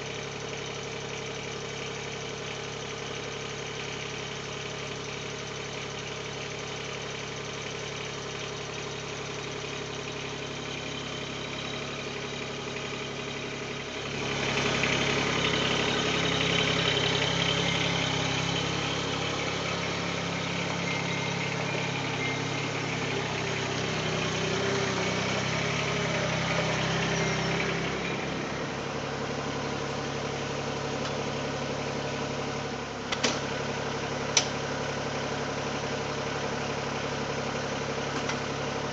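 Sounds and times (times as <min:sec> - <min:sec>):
tractor diesel engine running: 0:00.0 - 0:38.9.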